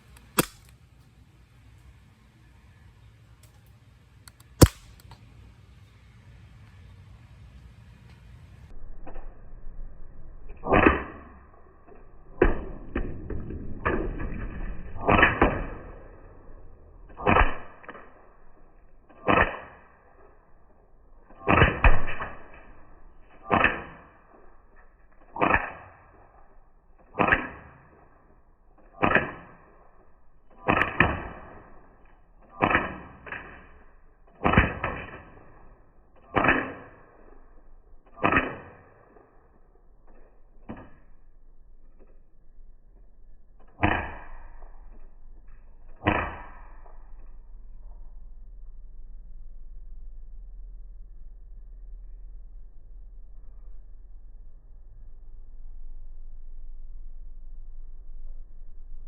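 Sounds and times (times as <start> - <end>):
bb gun shots: 0.1 - 0.8, 4.3 - 5.2, 17.1 - 18.2, 19.1 - 19.9, 21.3 - 24.2, 28.9 - 29.7, 30.6 - 31.8, 32.4 - 33.7, 34.3 - 37.1, 38.0 - 39.3, 43.6 - 47.0.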